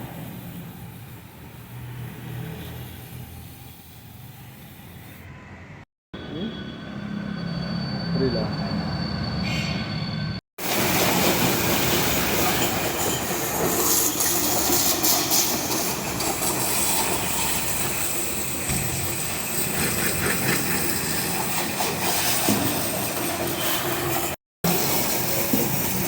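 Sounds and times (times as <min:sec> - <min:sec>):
water jet spraying: 0:10.6 - 0:26.0.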